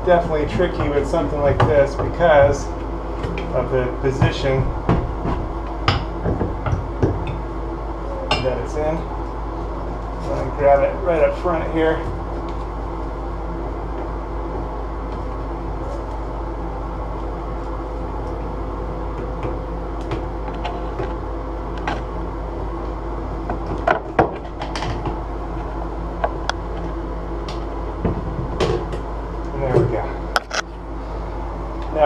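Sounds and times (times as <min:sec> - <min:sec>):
mechanical hum: 0:00.0 - 0:32.0.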